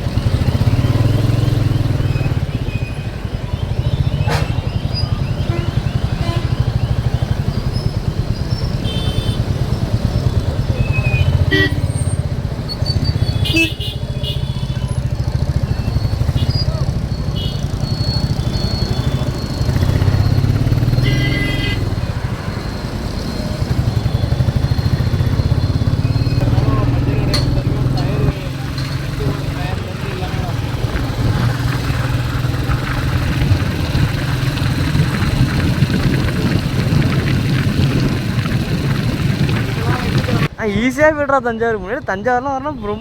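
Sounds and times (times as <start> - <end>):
motorcycle engine thumping: 23.4 - 40.6.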